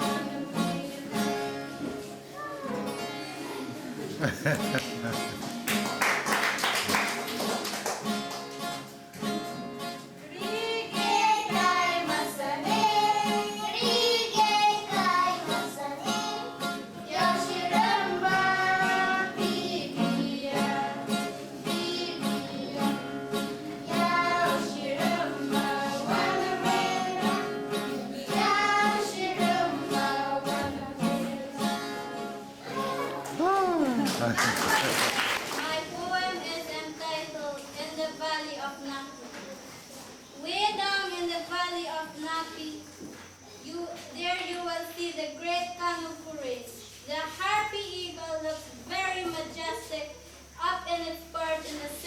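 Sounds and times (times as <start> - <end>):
strummed acoustic guitar: 0.0 - 6.3, 6.9 - 34.6
person singing: 32.7 - 34.3.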